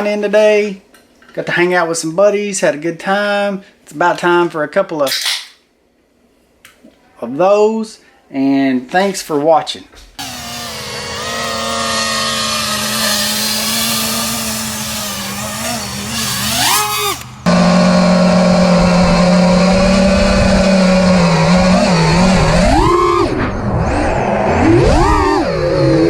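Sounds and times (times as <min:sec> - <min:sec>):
electric motors whining: 0:10.2 - 0:26.0.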